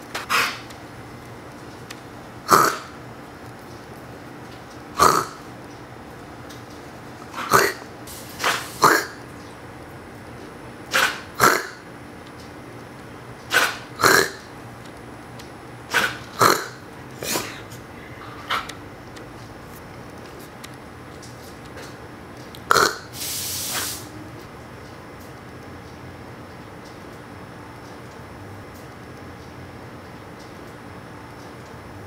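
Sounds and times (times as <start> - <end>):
dog coughing: 0.2 - 0.7, 2.4 - 3.0, 4.9 - 5.5, 7.3 - 9.2, 10.9 - 11.9, 13.5 - 14.5, 15.9 - 18.7, 22.7 - 23.2
person coughing: 16.6 - 17.8
short breathy hiss: 23.1 - 24.1.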